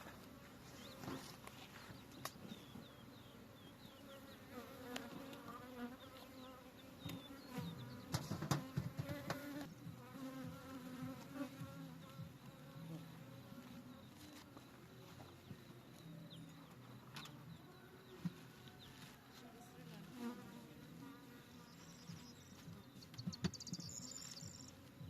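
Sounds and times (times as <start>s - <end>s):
honeybees buzzing: 0.0s - 25.0s
knocks and thumps: 8.1s - 9.4s.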